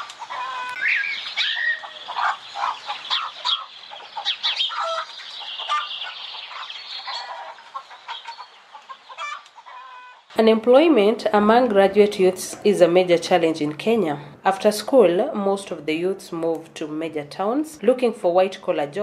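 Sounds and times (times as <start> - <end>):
chickens chirping: 0.0 - 10.3.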